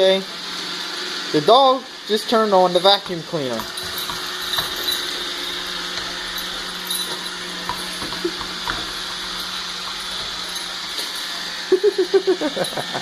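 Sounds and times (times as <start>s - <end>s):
vacuum cleaner running: 0.0s - 13.0s.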